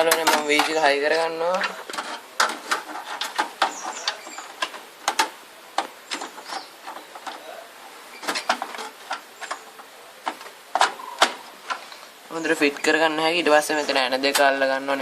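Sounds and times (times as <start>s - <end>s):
hard parts clicking and knocking: 0.0s - 12.0s.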